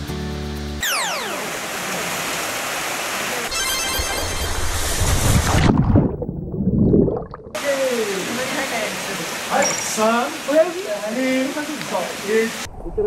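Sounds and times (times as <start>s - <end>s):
falling whistle sound effect: 0.8s - 1.4s
rushing stream water: 1.2s - 6.1s, 7.6s - 12.7s
heavy water splashing: 1.2s - 12.7s.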